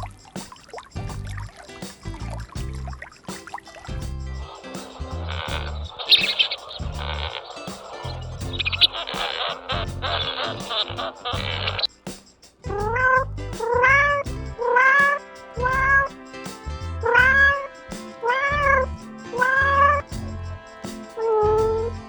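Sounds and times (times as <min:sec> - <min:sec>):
background music: 0:00.0 - 0:22.0
cat meowing: 0:14.6 - 0:15.2.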